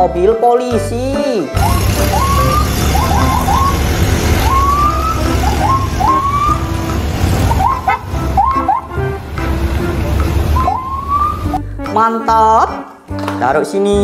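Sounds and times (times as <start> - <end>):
police siren whoops: 1.6 - 9.1, 10.5 - 11.6
low engine-like rumble: 3.2 - 11.6.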